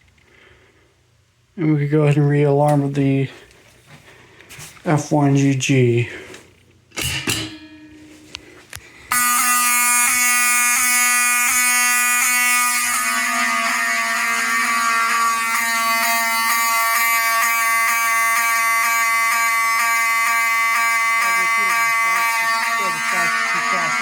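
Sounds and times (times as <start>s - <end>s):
buzzing alarm horn blare: 9.1s - 24.0s.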